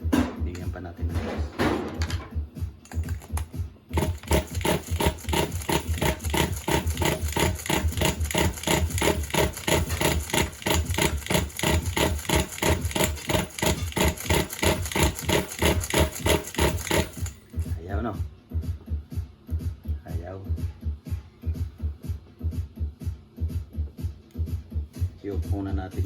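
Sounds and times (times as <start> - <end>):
engine cranking on starter motor: 2.9 - 17.6.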